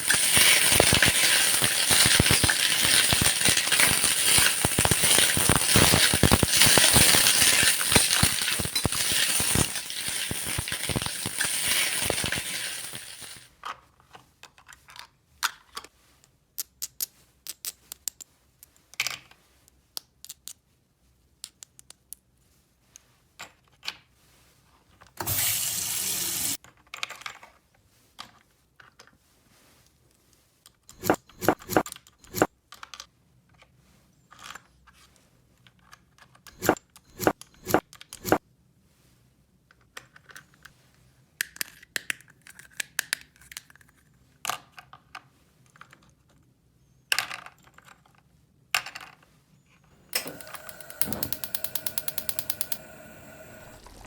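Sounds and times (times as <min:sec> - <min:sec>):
small hard pieces clattering: 0:00.0 - 0:13.5, 0:50.1 - 0:54.0.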